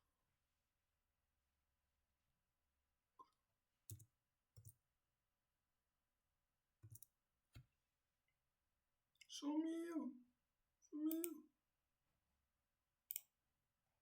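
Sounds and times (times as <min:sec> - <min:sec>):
faint mouse clicks: 0:03.9 - 0:04.8, 0:06.8 - 0:07.7, 0:11.1 - 0:11.4, 0:13.1 - 0:13.3.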